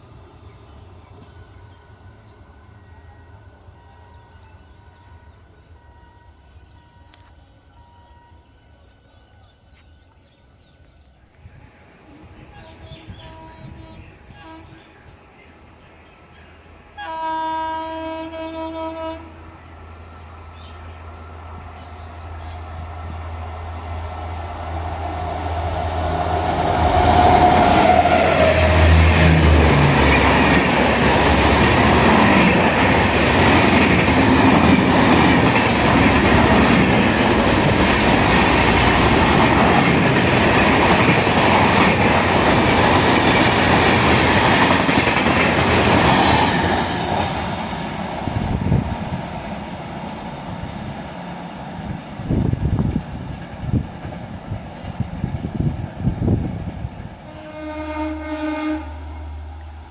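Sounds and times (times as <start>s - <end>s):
train passing: 0.0s - 10.2s, 10.8s - 59.9s
train horn blast: 12.2s - 15.2s, 16.9s - 19.6s, 57.3s - 59.9s.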